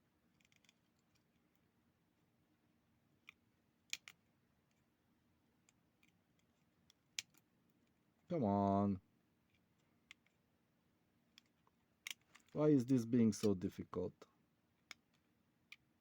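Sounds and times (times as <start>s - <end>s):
small tools clicking on circuit board: 0.4s - 1.6s, 3.2s - 4.2s, 11.3s - 12.6s.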